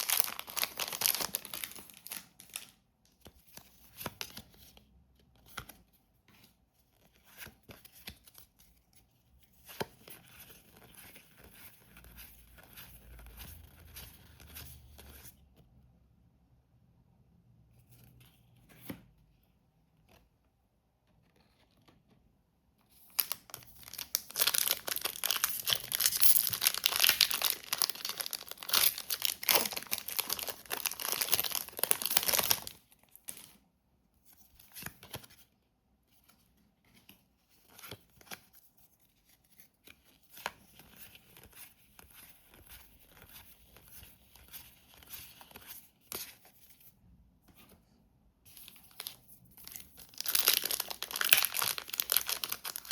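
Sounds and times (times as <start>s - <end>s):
packaging tearing and crinkling: 0.0s - 2.5s, 23.2s - 33.4s, 49.7s - 52.9s
packaging rustling: 0.0s - 2.7s, 23.2s - 33.5s, 48.6s - 52.9s.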